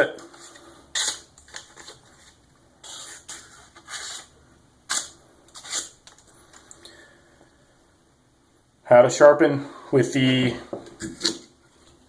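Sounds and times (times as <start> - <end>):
handling scrapes and rubs: 0.2 - 4.3.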